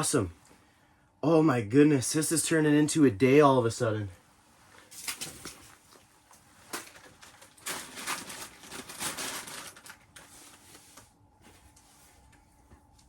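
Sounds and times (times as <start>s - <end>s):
rustling and crinkling: 4.5s - 13.0s.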